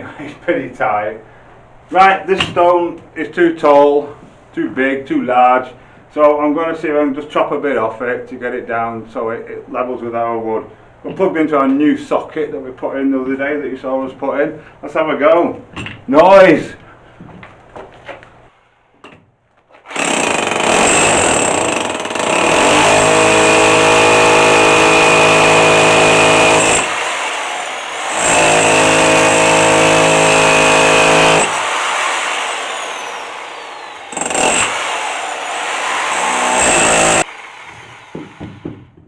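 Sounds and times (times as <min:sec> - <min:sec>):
power tool whining: 0:19.9 - 0:38.8
deep drone cutting stone: 0:20.0 - 0:38.5.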